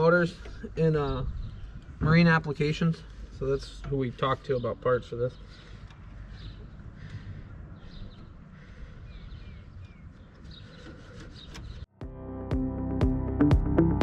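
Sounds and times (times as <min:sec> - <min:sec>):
electronic music with steady beat: 0:11.9 - 0:14.0.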